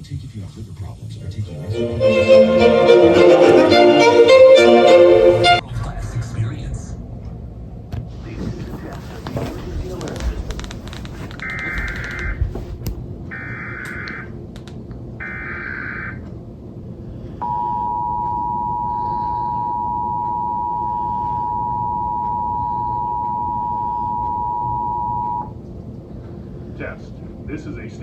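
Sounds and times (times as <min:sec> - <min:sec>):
two-tone attention signal: 0:17.5 - 0:25.5.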